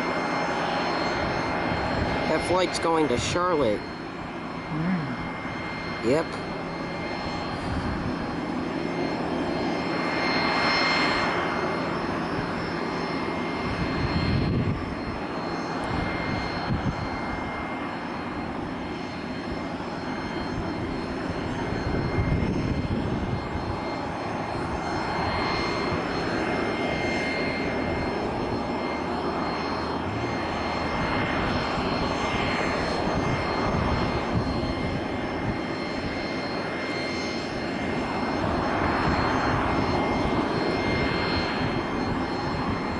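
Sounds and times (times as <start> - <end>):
jet engines whining: 0.0 - 42.9
wind buffeting microphone: 7.4 - 9.4, 13.4 - 17.7, 20.6 - 28.7, 30.0 - 36.3, 37.5 - 42.9.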